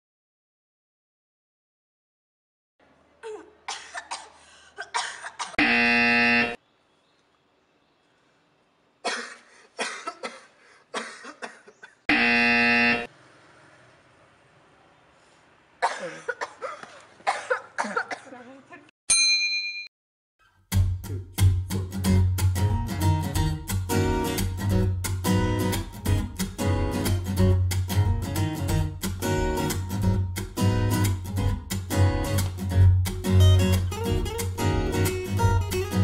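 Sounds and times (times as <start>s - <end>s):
person coughing: 3.2s - 5.6s, 9.0s - 12.0s, 15.8s - 18.4s
flat buzzer sound effect: 5.6s - 6.6s, 12.1s - 13.1s.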